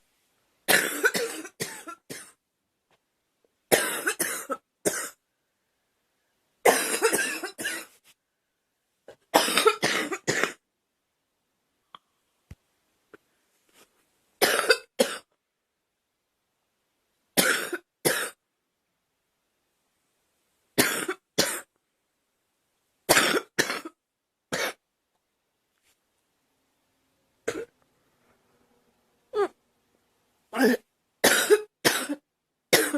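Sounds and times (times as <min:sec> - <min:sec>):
woman coughing: 0:00.7 - 0:02.4, 0:03.7 - 0:05.2, 0:06.7 - 0:07.9, 0:09.4 - 0:10.6, 0:14.4 - 0:15.3, 0:30.6 - 0:32.2.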